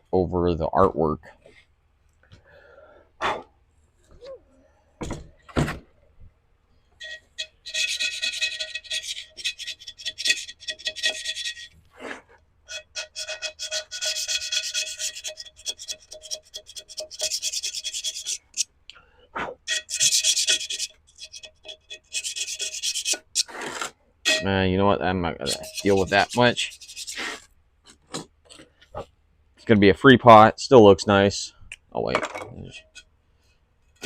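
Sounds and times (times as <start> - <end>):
scraping tool on ceramic pot: 7.0 - 18.7, 19.6 - 24.6, 25.4 - 28.7, 32.7 - 33.1.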